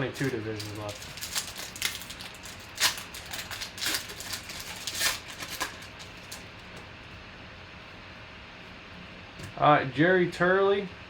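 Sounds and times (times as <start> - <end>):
trading cards clicking and rustling: 0.0 - 6.8.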